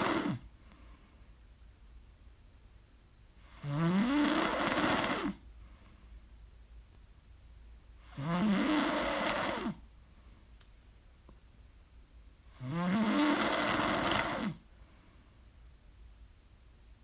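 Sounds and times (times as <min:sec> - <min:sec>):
person snoring loudly: 0:00.0 - 0:00.5, 0:03.4 - 0:05.4, 0:08.0 - 0:09.8, 0:12.5 - 0:14.6.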